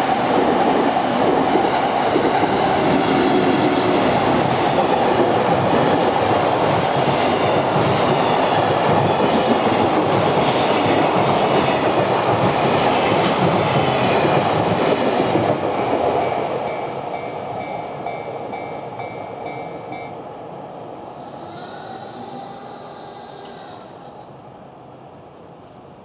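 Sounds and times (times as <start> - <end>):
train wheels running on rails: 0.0 - 20.5.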